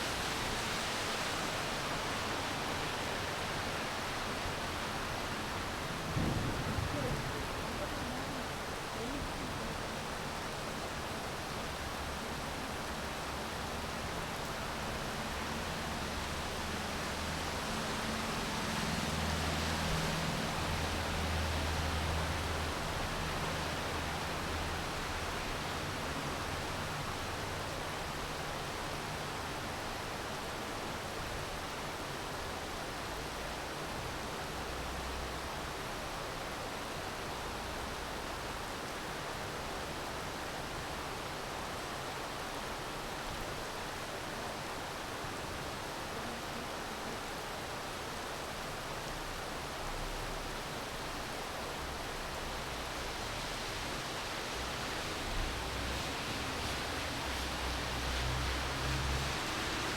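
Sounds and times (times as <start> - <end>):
steady rainfall: 0.0 - 59.9.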